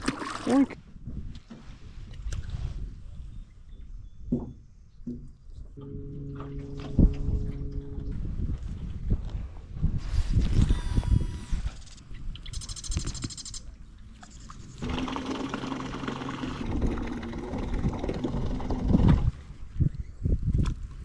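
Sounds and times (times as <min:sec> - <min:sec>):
small motor humming: 0:10.5 - 0:13.6.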